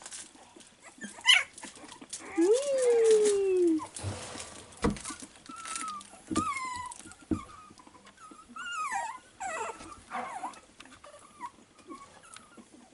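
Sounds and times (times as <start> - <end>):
puppies whimpering and squeaking: 0.0 - 4.0, 5.0 - 12.9
soft thumps: 3.9 - 7.5.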